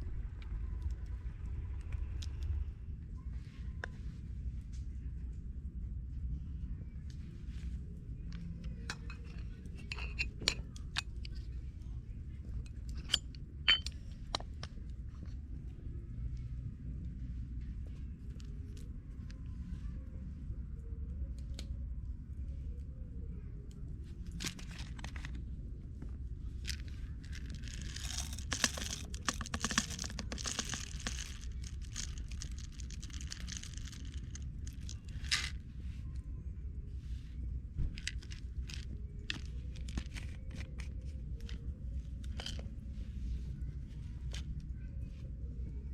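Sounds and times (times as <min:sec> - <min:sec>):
low rumble: 0:00.0 - 0:45.9
metal and glass clinks: 0:08.9 - 0:11.0, 0:12.9 - 0:14.0.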